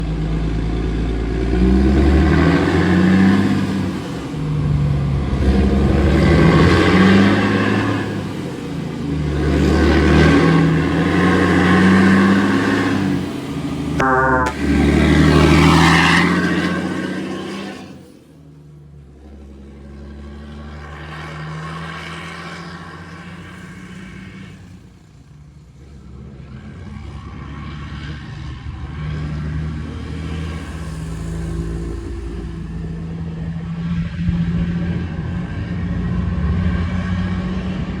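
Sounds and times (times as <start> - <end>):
engine throttle burst: 30.0 - 33.5
motorcycle engine running: 30.9 - 33.8.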